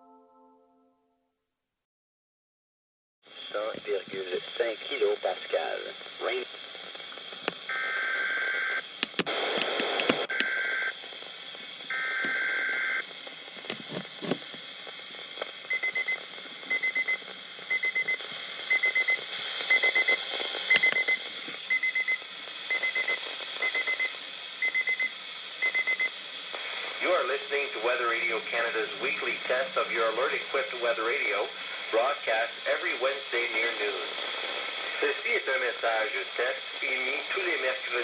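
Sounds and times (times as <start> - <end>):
radio hiss: 3.3 - 16.7, 22.4 - 23.6, 26.4 - 38.0.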